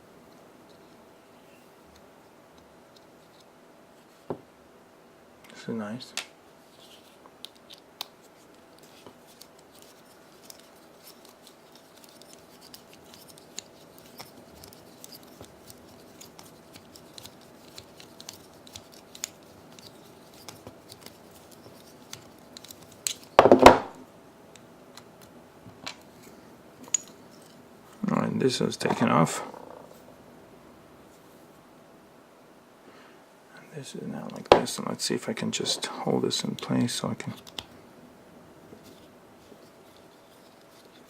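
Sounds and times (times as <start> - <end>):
small metal clicks and scrapes: 6.8 - 23.4.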